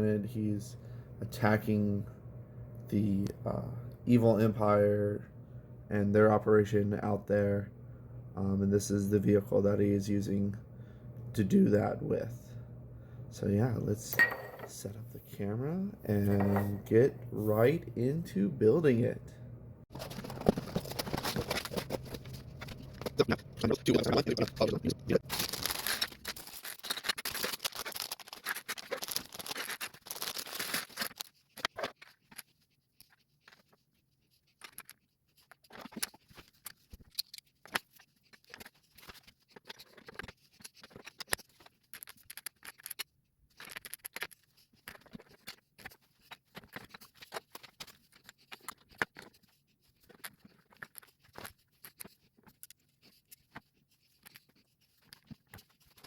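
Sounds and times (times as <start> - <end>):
plastic rustling: 19.9 - 23.2, 25.2 - 32.4.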